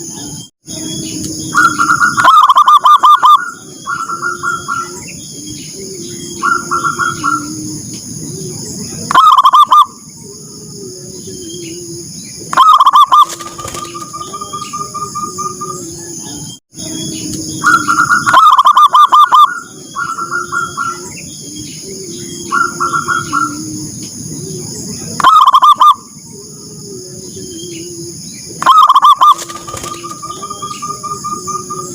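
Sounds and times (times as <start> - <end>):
doves cooing: 0.0 - 31.9
rapid quavering bird notes: 12.5 - 15.8, 28.6 - 31.9.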